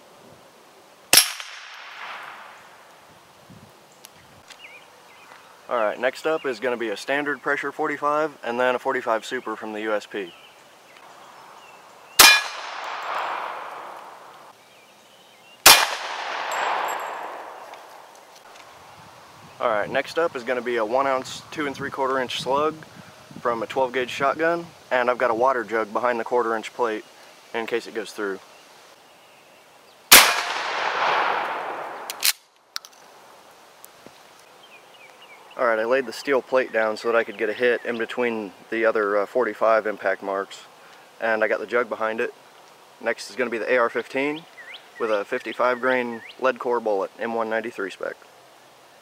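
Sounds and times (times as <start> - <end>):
gunshot echo: 1.1 - 2.6, 12.2 - 14.3, 15.6 - 17.9, 30.1 - 32.3
pistol shots: 1.1 - 2.6, 12.2 - 14.2, 15.6 - 18.0, 30.1 - 32.4
bullet clanging on steel plate: 12.2 - 13.3, 16.4 - 17.8.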